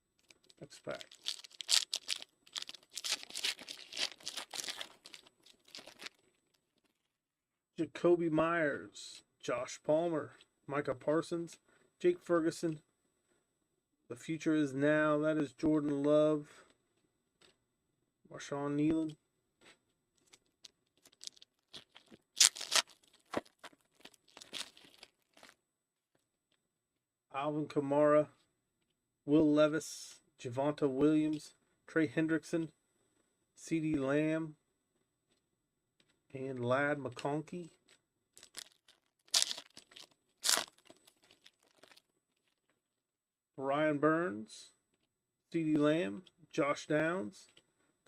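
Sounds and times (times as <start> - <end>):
wrapper torn and crinkled: 0.2 - 6.2, 21.0 - 25.6, 38.4 - 42.6.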